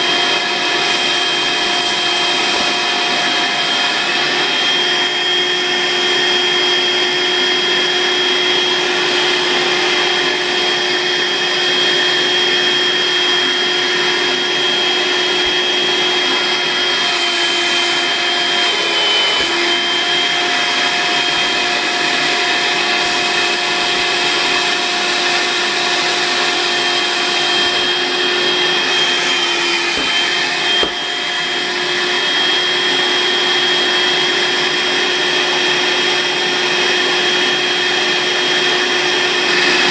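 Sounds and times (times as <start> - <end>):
stick vacuum motor whine: 0.0 - 39.9.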